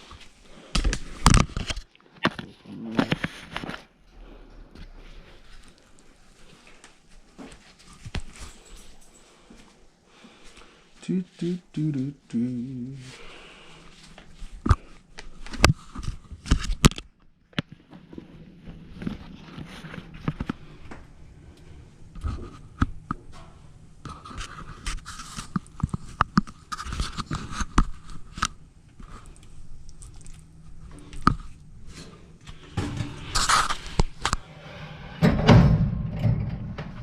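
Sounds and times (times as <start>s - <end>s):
loud scraping noise: 32.7s - 37.0s.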